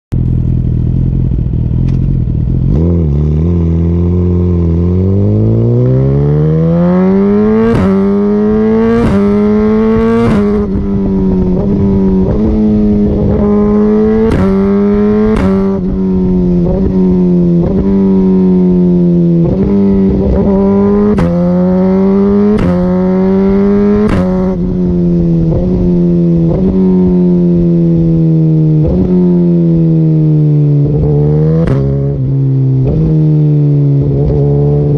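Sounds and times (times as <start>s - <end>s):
exhaust pops on upshifts: 0.1s - 2.9s, 10.0s - 18.0s, 19.4s - 21.6s, 22.2s - 23.0s, 23.9s - 24.8s, 31.0s - 32.2s
motorcycle engine accelerating: 0.1s - 34.9s.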